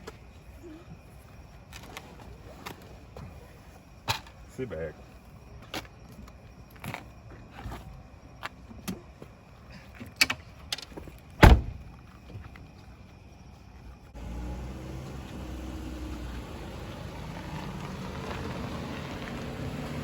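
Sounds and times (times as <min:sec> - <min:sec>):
car door shutting: 0:11.4 - 0:11.8
car engine low hum: 0:14.0 - 0:20.0.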